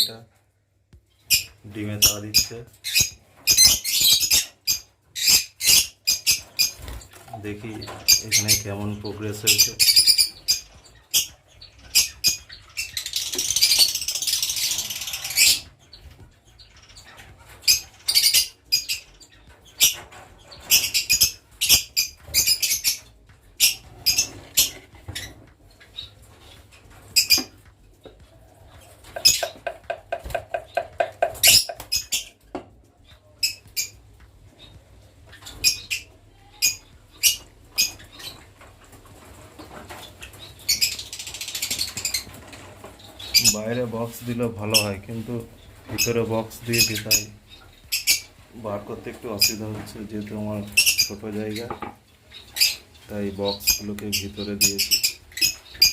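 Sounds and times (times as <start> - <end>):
lovebirds chirping: 0.0 - 55.9
birds squawking: 1.2 - 55.9
bird rattling call: 29.2 - 32.2.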